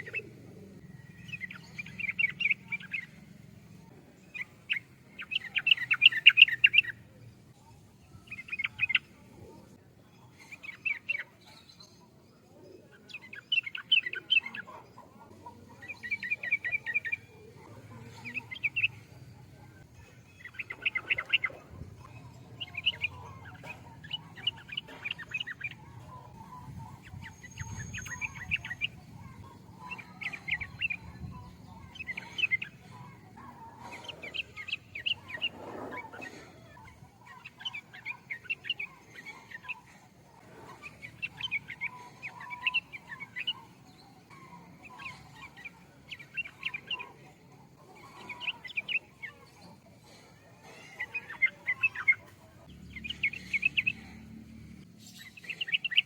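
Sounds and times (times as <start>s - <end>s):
bulbul singing: 0.0s - 56.0s.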